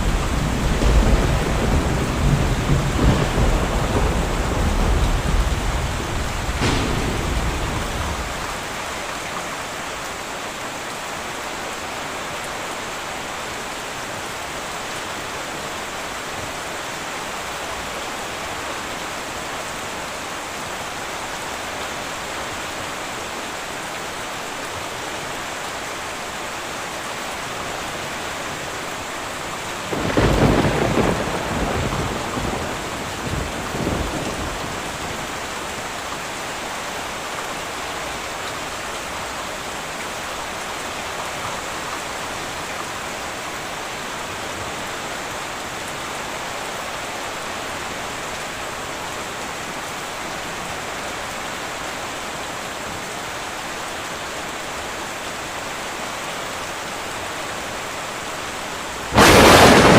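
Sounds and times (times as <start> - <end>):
loud thunderclap: 0.0 - 8.9, 29.9 - 35.2, 59.1 - 59.9
thunder rumbling: 0.0 - 9.0, 29.9 - 35.4, 59.1 - 59.9
heavy rain on a tin roof: 0.0 - 59.9.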